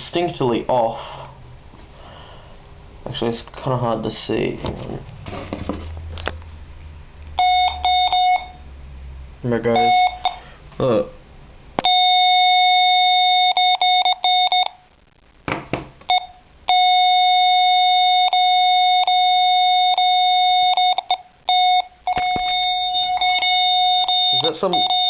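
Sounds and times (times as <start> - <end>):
high-pitched speaker beeping: 7.4 - 8.6, 9.7 - 10.4, 16.1 - 25.0.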